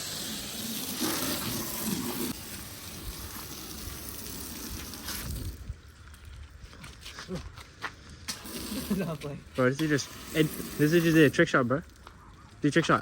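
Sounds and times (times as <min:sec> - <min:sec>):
hose spraying water on car: 0:00.0 - 0:05.7, 0:08.3 - 0:11.6.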